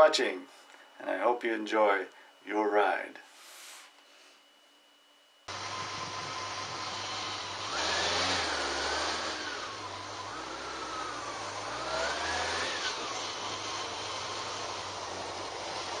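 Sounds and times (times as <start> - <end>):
vehicle engine running: 5.5 - 16.0
wind and road noise: 5.5 - 16.0.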